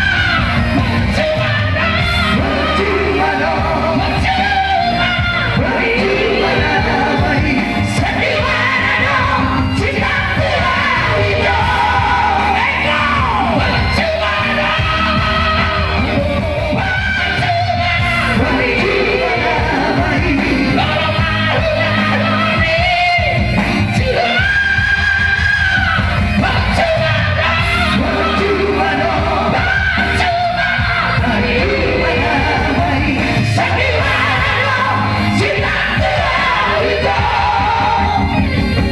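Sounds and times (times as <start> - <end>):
amplified music accompaniment: 0.0 - 38.9
vocal trio singing: 0.0 - 38.9.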